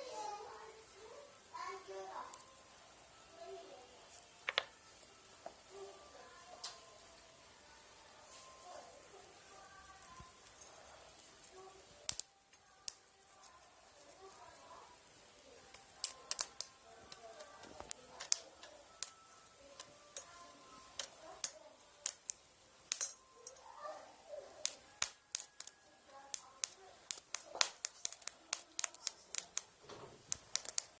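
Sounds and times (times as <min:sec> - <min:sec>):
spot welder sparks snapping: 0:12.1 - 0:12.3, 0:16.0 - 0:16.7, 0:21.0 - 0:23.2, 0:24.6 - 0:31.0.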